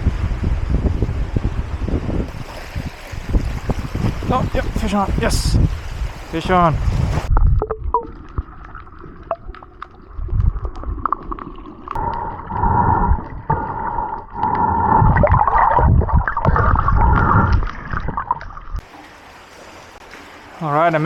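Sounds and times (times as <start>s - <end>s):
muffled underwater gurgling and sloshing: 2.3s - 18.8s.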